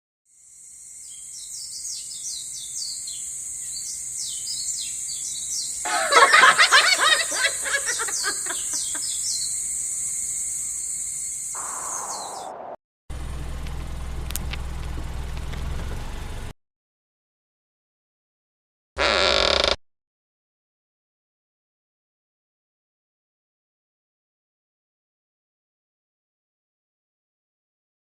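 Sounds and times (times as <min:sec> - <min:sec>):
dense flurry of bird calls: 0:01.1 - 0:09.6
birds chirping: 0:01.1 - 0:10.9, 0:11.6 - 0:12.7
high-pitched hiss: 0:07.5 - 0:12.7.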